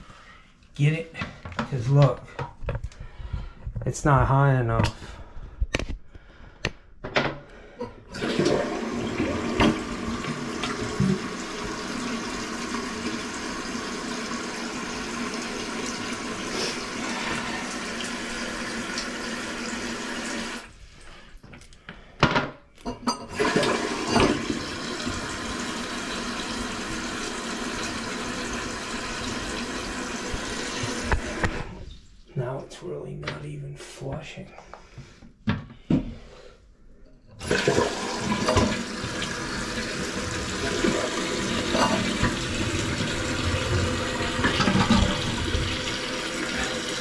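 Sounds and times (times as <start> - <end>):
toilet flushing: 8.1 - 20.8, 23.2 - 31.8, 37.4 - 47.0.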